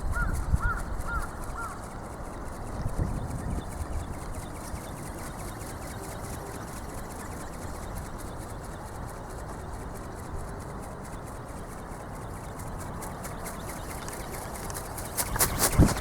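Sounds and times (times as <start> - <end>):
wind buffeting microphone: 0.0 - 4.9, 13.1 - 16.0
faint fast even ticking: 0.0 - 16.0.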